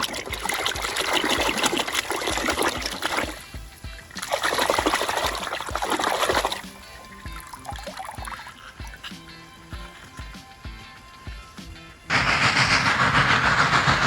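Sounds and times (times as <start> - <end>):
water splashing: 0.0 - 10.3
background music with steady beat: 0.0 - 14.0.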